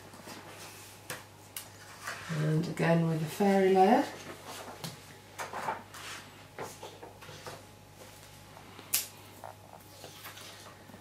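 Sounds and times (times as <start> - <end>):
card and acetate sheet rustling: 3.9 - 7.6.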